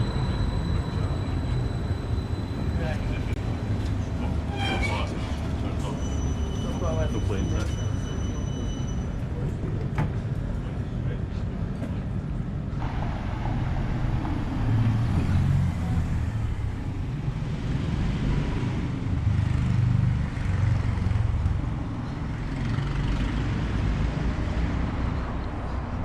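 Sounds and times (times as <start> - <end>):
motor vehicle rumble: 9.0 - 26.0.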